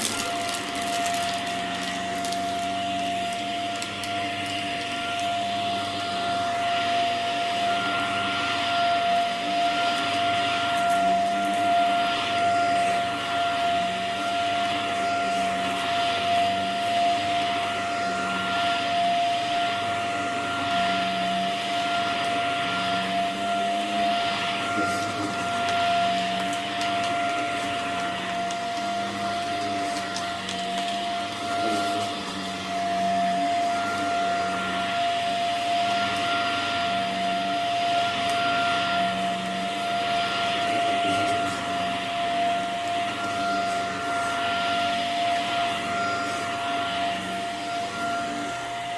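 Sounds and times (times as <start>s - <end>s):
vacuum cleaner on rug: 0.0s - 48.9s.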